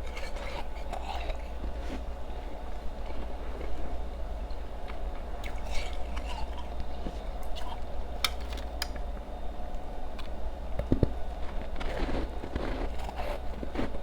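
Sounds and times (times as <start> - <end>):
chewing and crunching ice cubes: 0.0 - 2.1, 3.0 - 9.0, 11.4 - 14.0.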